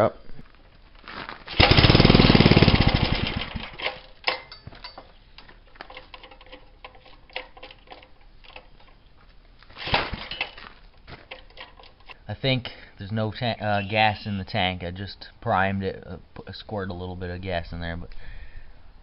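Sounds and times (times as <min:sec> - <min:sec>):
scattered clicks and knocks: 0:09.8 - 0:12.2.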